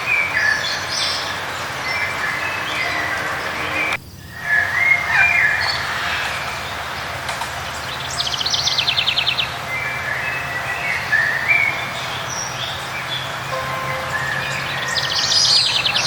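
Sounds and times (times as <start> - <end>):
birds whistling calls: 0.0 - 16.0
bird trilling: 13.8 - 16.0.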